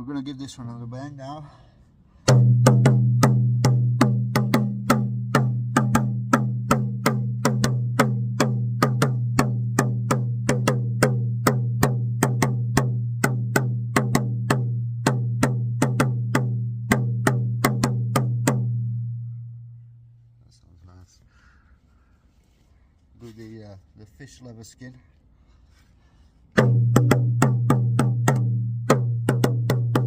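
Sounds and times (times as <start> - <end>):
frame drum beaten steadily: 2.3 - 19.1, 26.6 - 30.0.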